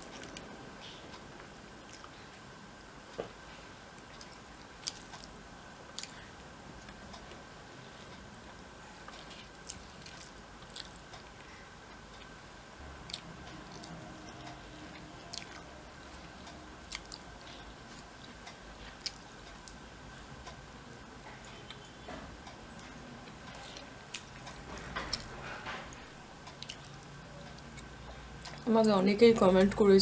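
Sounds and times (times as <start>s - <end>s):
person chewing food: 1.8s - 2.3s, 4.0s - 7.4s, 9.1s - 11.5s, 13.0s - 15.7s, 16.9s - 19.8s, 22.8s - 28.6s.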